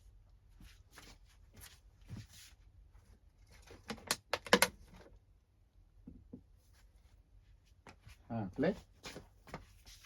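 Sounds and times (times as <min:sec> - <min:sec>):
soft handling sounds: 0:00.0 - 0:03.9, 0:06.4 - 0:10.0.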